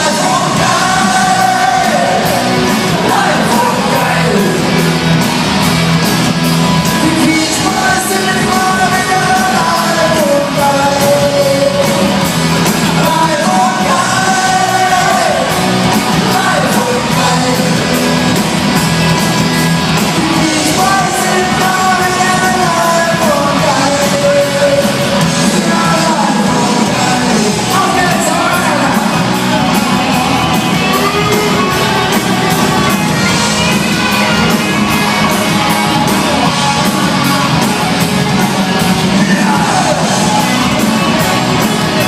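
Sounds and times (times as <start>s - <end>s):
shouting: 0.0s - 4.9s
person singing: 0.0s - 5.0s, 6.8s - 18.4s, 20.0s - 42.0s
live band music: 0.0s - 42.0s.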